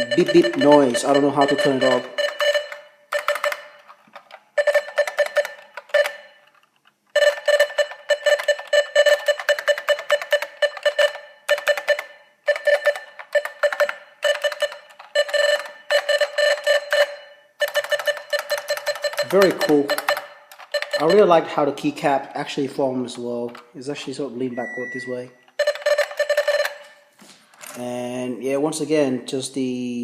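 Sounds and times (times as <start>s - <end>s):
fast keyboard typing: 0.0s - 6.2s, 7.2s - 21.4s, 25.6s - 26.8s.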